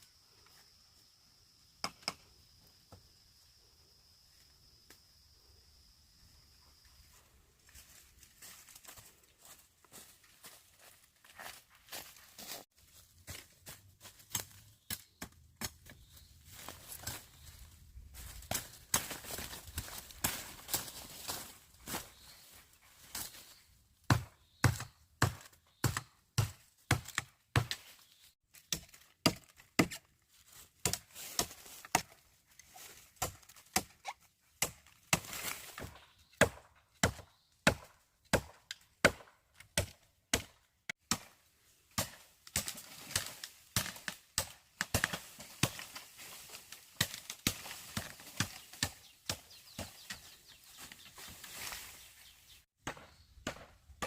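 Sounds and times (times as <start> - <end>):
blade chopping bamboo: 24.1 - 27.9, 28.5 - 30.1, 33.1 - 46.0, 46.9 - 50.2.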